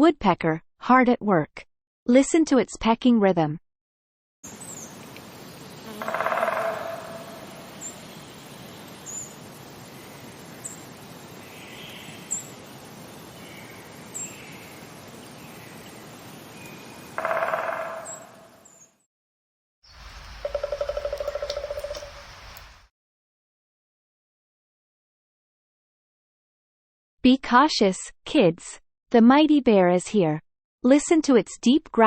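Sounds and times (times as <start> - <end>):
forest background: 4.4 - 19.0, 19.8 - 22.9
faint bird calls: 4.7 - 10.8, 16.6 - 18.8, 19.9 - 22.7
woodpecker drumming on wood: 5.8 - 7.7, 17.1 - 18.6, 20.0 - 22.7.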